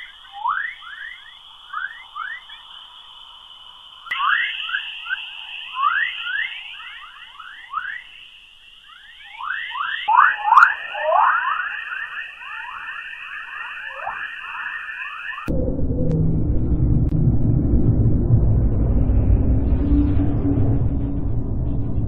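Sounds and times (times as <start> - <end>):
whistling chirps: 0.0 - 15.5
high hissing tone: 0.0 - 17.7.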